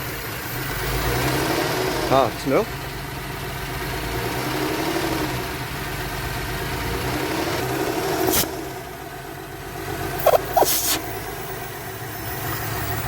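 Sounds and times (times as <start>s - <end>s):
car engine idling unsteadily: 0.0s - 13.0s
short sharp sounds: 10.2s - 11.0s.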